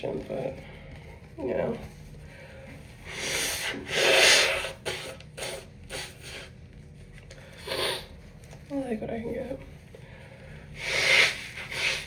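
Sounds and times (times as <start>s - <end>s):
breathy nasal rasps: 3.1s - 6.5s, 7.6s - 8.1s, 10.8s - 12.0s
tissue rubbing at nose: 10.7s - 12.0s.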